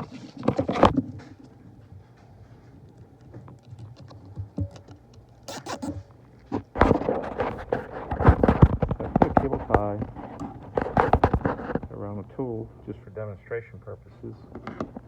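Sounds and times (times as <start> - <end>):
handling noise: 0.0 - 12.2
cable tie zipping rasp: 5.4 - 11.8.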